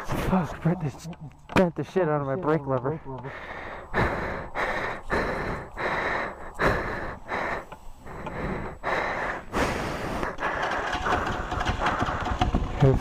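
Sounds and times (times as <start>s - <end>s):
man breathing heavily: 3.0s - 12.8s.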